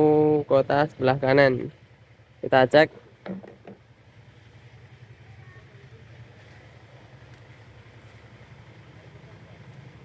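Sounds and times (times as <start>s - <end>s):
engine idling hum: 0.0s - 10.0s.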